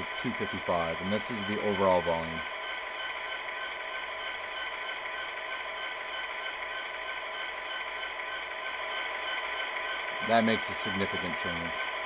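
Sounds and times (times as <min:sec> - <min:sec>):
diesel engine sound through small speaker: 0:00.0 - 0:02.6, 0:10.1 - 0:12.0.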